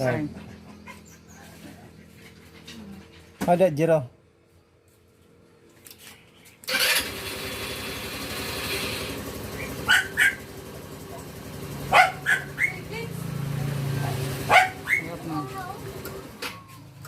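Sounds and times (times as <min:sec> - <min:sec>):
motorcycle engine starting and idling: 0:06.6 - 0:17.0
dog barking: 0:09.8 - 0:12.9, 0:14.1 - 0:15.2.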